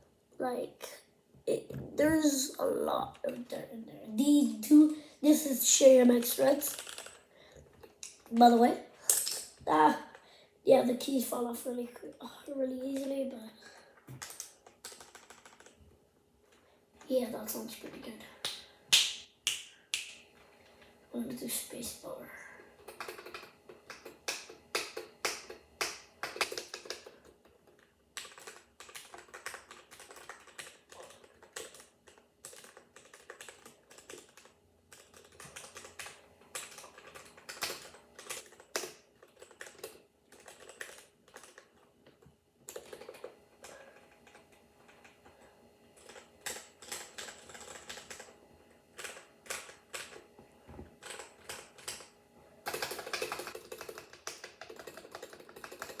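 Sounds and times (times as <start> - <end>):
mechanical keyboard typing: 2.0 - 7.2, 14.1 - 15.8, 22.8 - 45.2, 46.0 - 50.2, 51.0 - 52.1, 52.7 - 56.0.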